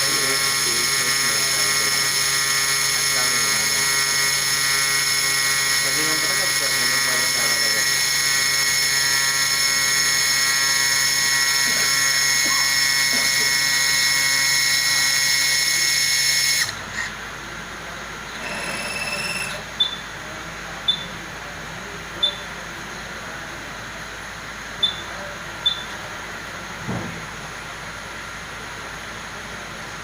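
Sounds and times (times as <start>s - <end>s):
machine spindle whining: 0.0s - 17.2s, 18.2s - 20.1s
short high beeps: 18.4s - 20.1s, 20.9s - 21.1s, 22.2s - 22.5s, 24.8s - 25.9s.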